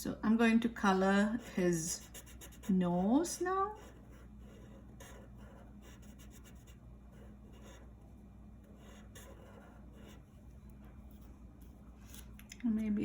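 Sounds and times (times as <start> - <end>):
drawing tool scratching on paper: 1.3 - 8.0, 8.6 - 10.4.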